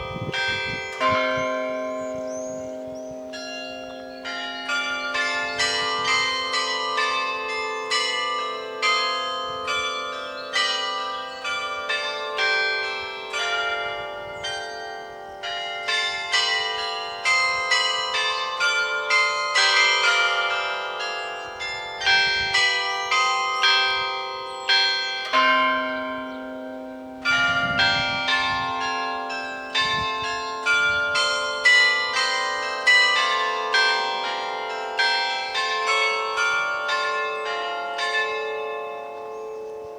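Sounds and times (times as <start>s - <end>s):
church bells ringing a peal: 0.0s - 39.9s.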